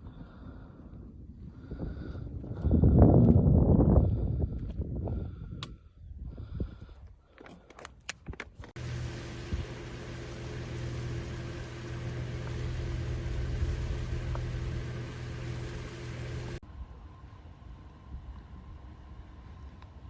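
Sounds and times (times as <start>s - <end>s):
low mechanical rumble with hum: 8.6s - 20.0s.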